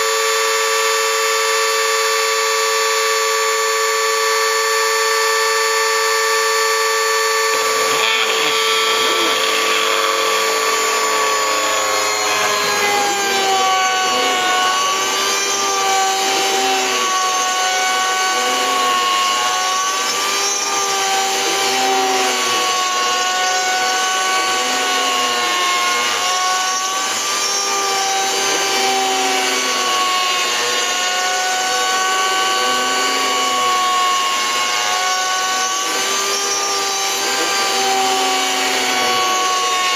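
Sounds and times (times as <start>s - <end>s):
cnc mill spindle whining: 0.0s - 39.9s.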